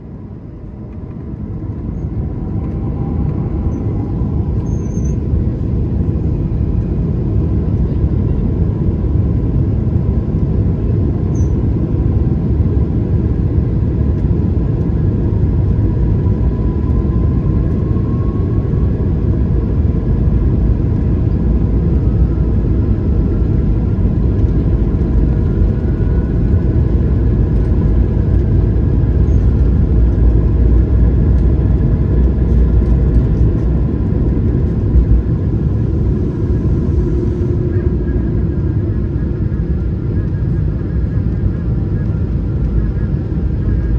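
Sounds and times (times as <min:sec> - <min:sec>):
aircraft engine rumble: 0:00.0 - 0:43.9
faint engine whine rising: 0:00.0 - 0:43.9.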